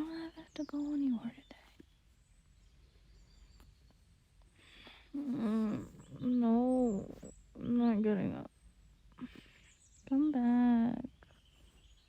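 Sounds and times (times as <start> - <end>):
soft breath: 4.4 - 6.3, 9.1 - 10.0.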